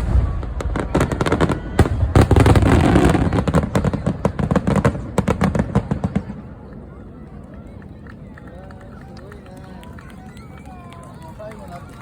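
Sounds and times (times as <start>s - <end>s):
deep fireworks booms: 0.0s - 6.6s
fireworks crackling: 0.0s - 6.6s.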